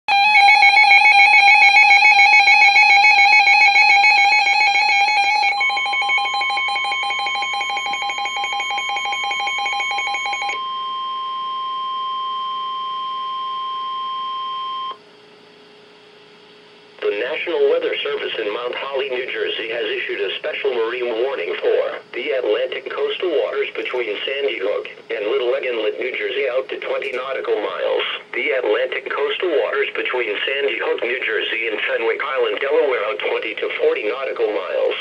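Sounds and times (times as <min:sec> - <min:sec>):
steady single-pitch alert tone: 0:00.1 - 0:15.0
warbling multi-tone alarm: 0:00.1 - 0:15.0.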